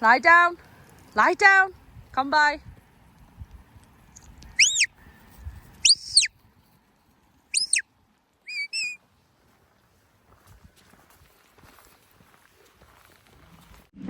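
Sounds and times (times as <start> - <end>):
shepherd's whistle: 4.5 - 4.9, 5.8 - 6.3, 7.5 - 7.8, 8.5 - 9.0.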